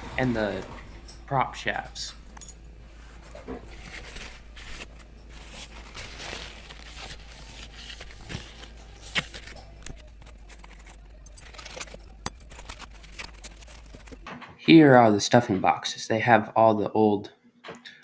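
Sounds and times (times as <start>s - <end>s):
rubbing and scrubbing metal parts: 0.0s - 14.3s.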